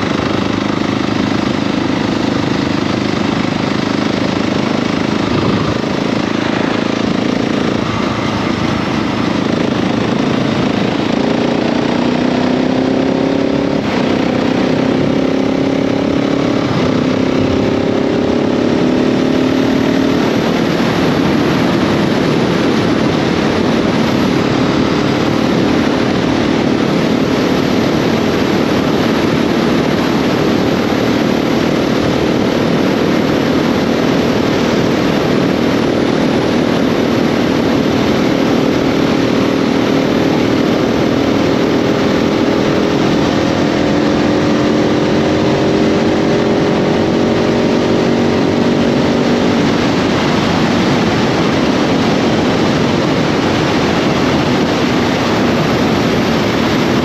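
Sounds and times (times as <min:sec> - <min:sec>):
motorcycle engine revving: 0:00.0 - 0:57.0
riding wind rushing: 0:00.0 - 0:57.0.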